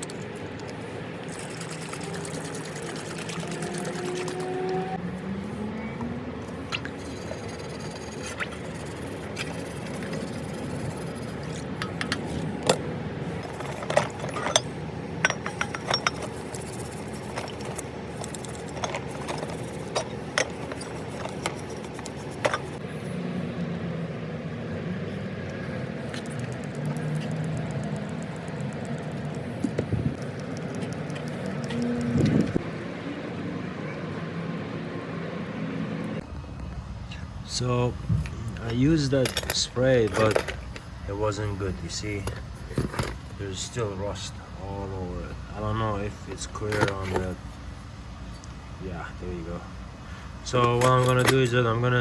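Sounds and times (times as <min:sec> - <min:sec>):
small metal parts clinking: 0:13.4 - 0:21.8.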